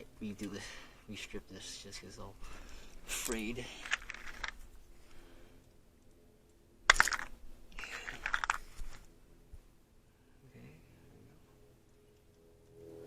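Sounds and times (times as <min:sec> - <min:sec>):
insulation crunching: 0:02.4 - 0:05.3, 0:06.8 - 0:09.2.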